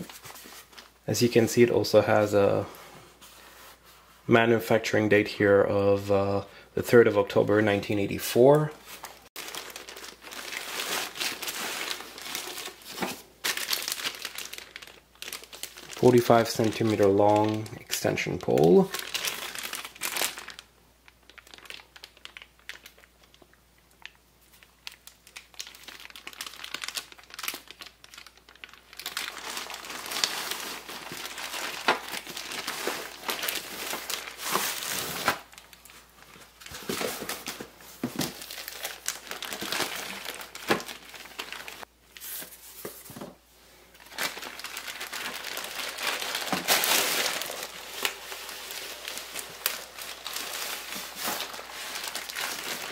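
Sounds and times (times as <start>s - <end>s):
packaging rustling and crinkling: 0.0s - 4.0s, 8.8s - 52.9s
packaging tearing: 9.4s - 17.7s, 18.3s - 20.7s, 24.8s - 36.0s, 36.6s - 42.4s, 44.0s - 52.9s.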